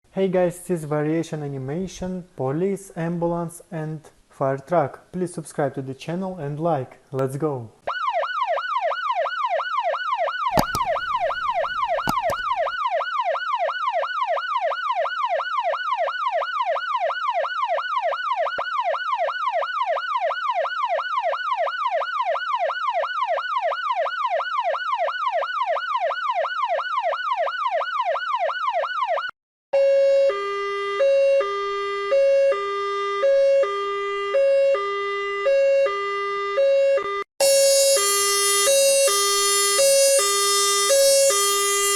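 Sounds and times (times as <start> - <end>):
siren yelping: 7.9 - 13.3, 31.1 - 41.9
two-tone hi-lo siren: 7.9 - 41.9.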